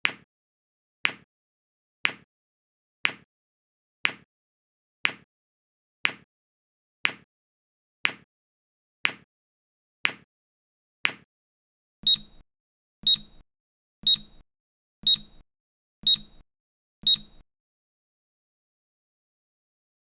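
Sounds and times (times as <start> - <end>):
newton's cradle clicking: 12.0 - 12.4, 13.0 - 13.4, 14.0 - 14.4, 15.0 - 15.4, 16.0 - 16.4, 17.0 - 17.4
short high electronic beeps: 12.0 - 12.4, 13.0 - 13.4, 14.0 - 14.4, 15.0 - 15.4, 16.0 - 16.4, 17.0 - 17.4.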